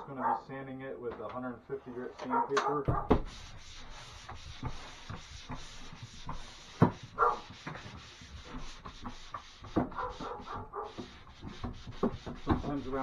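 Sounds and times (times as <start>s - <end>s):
dog barking: 0.0s - 0.5s, 2.2s - 3.1s, 7.2s - 7.5s, 10.0s - 11.0s
sandpaper rubbing on drywall: 3.0s - 13.0s.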